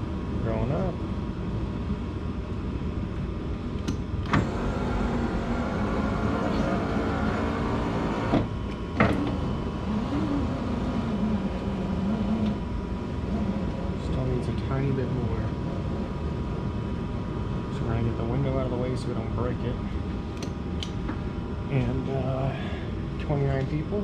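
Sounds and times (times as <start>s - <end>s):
steady background hum: 0.0s - 24.0s
power window motor running: 4.2s - 12.7s.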